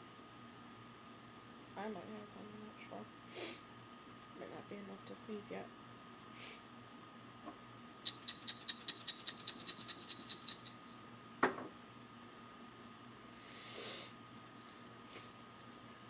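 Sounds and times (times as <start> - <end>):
pepper grinder crunchy clicks: 8.0 - 10.9
brief breathy hiss: 13.4 - 14.1.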